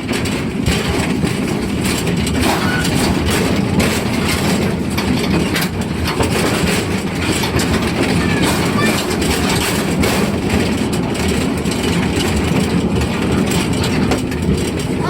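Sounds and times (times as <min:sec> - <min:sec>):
train cars rumbling on track: 0:00.0 - 0:15.0.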